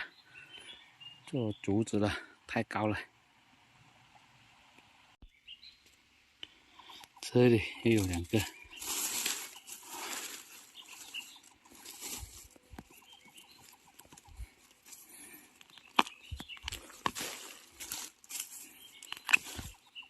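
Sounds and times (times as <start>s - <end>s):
rustling of dry bamboo leaves: 6.6s - 20.0s
small crackles: 6.7s - 19.9s
bamboo shoots snapping: 15.6s - 19.8s.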